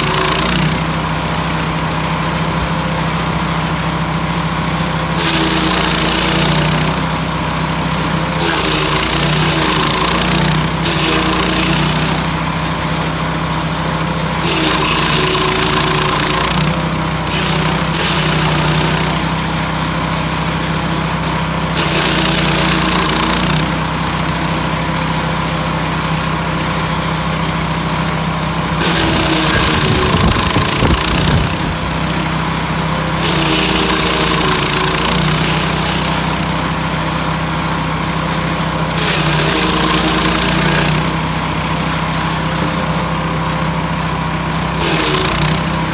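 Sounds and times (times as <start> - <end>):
wood chipper engine running: 0.0 - 45.9
branches being shredded: 5.1 - 7.1, 8.4 - 12.5, 14.4 - 19.3, 21.7 - 23.7, 28.7 - 32.4, 33.1 - 36.7, 38.9 - 41.2, 44.7 - 45.8.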